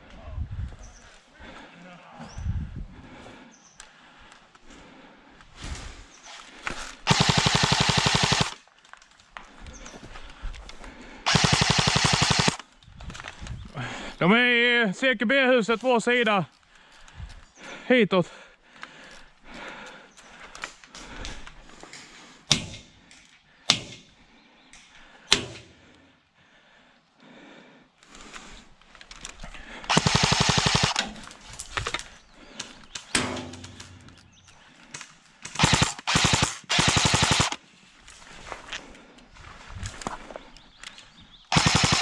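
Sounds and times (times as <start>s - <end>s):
airsoft rifle firing bursts: 7.1s - 8.7s, 11.3s - 12.7s, 29.9s - 31.3s, 35.4s - 37.6s, 41.5s - 42.0s.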